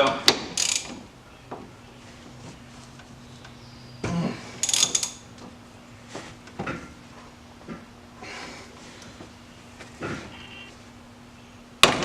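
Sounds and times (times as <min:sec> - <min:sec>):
socket wrench on nut: 0:00.6 - 0:00.9.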